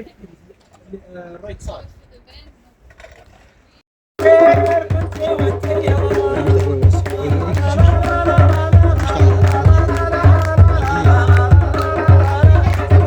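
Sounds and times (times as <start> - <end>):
deep drum beat: 4.2 - 13.0
wavering melody: 4.2 - 13.0.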